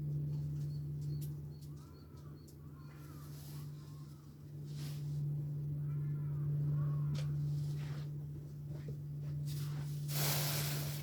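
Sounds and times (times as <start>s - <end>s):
low hum: 0.0s - 11.0s
faint arching calls: 1.5s - 4.6s.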